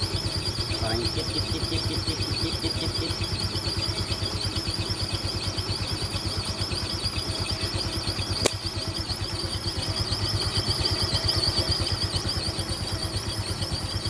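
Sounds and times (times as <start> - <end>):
scooter engine running: 0.0 - 14.0
sharp click: 8.4 - 8.9.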